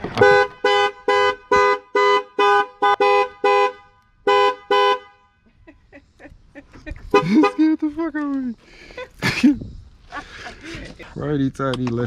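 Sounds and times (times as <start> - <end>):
two-tone vehicle horn blasts: 0.2 - 5.5.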